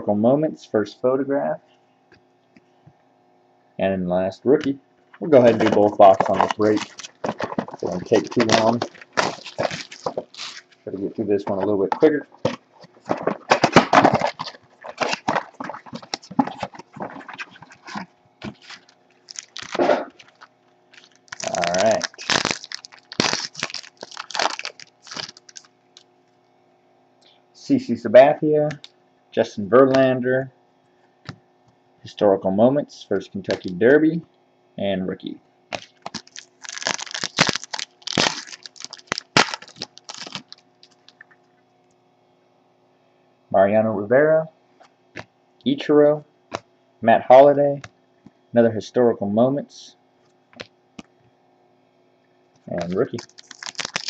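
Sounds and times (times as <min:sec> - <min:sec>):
packaging being torn open: 0:05.4 - 0:10.8, 0:11.9 - 0:25.7, 0:35.7 - 0:41.2, 0:52.8 - 0:54.0
wrapper crinkling and tearing: 0:05.4 - 0:11.0, 0:11.9 - 0:25.7, 0:35.7 - 0:41.2, 0:52.8 - 0:54.0.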